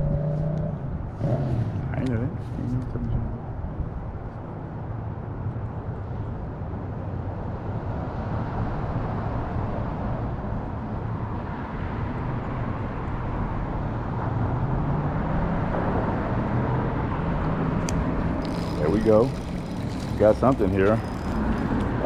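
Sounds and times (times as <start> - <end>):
vehicle approaching: 0.0 - 3.8, 14.0 - 22.0
low rumble of road traffic: 0.0 - 22.0.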